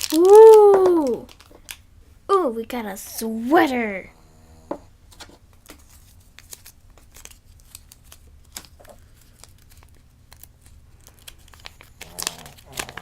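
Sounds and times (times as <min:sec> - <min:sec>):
packaging crinkling and clicking: 0:01.0 - 0:01.8, 0:05.1 - 0:13.0.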